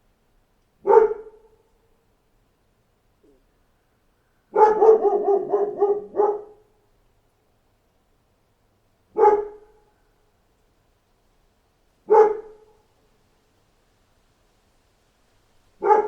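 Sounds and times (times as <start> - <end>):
dog barking: 0.8 - 1.7, 4.5 - 6.7, 9.1 - 9.8, 12.0 - 12.8, 15.8 - 16.0.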